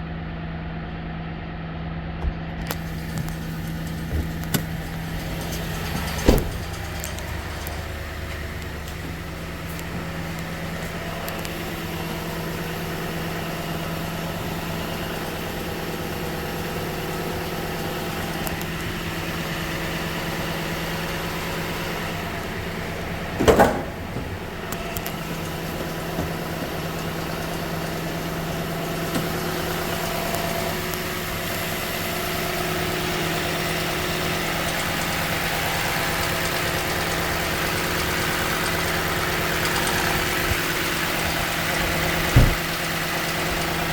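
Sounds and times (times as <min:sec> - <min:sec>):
engine idling: 0:00.0 - 0:43.9
engine clicking noise: 0:02.2 - 0:43.9
loud short thump: 0:06.2 - 0:06.8, 0:23.4 - 0:24.4, 0:42.3 - 0:42.6.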